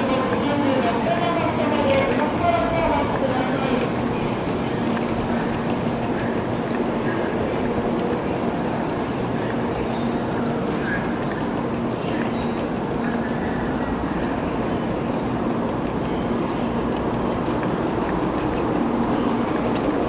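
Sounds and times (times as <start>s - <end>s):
high thin train whine: 0.0s - 15.5s
train running noise: 0.0s - 20.0s.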